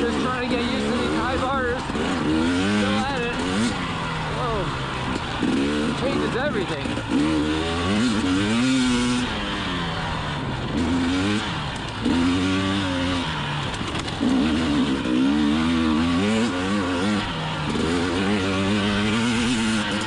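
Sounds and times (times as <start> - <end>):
motorcycle engine revving: 0.0 - 20.0.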